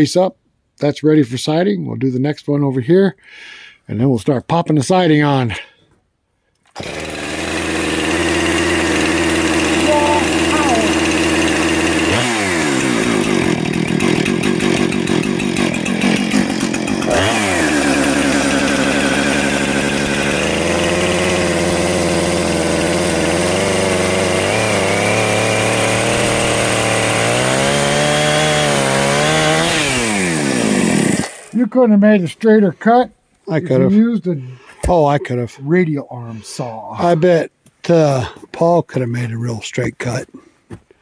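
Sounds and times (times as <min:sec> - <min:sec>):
chainsaw revving and cutting: 0:06.8 - 0:31.6.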